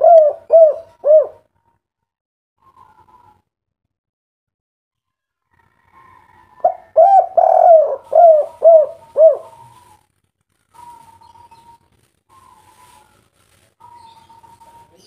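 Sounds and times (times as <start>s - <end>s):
dove cooing: 0.0s - 1.5s, 6.6s - 10.0s, 13.8s - 15.0s.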